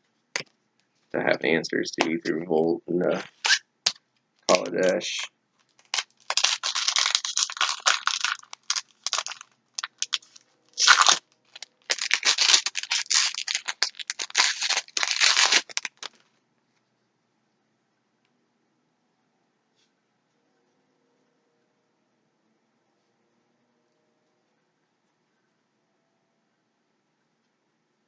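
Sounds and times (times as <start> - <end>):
foil wrapper crinkling: 3.2 - 16.3
foil wrapper tearing: 3.3 - 16.2.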